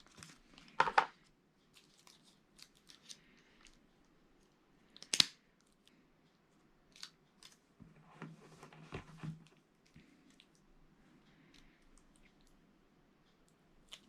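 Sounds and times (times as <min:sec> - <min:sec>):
hands handling small items: 0:00.0 - 0:03.8.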